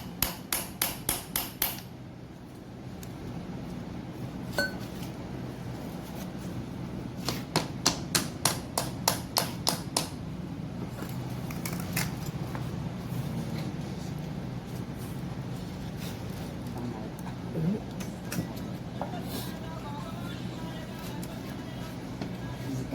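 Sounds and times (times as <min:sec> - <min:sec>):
sharp taps on metal: 0:00.0 - 0:01.9, 0:07.3 - 0:10.2
steady low hum: 0:00.0 - 0:22.9.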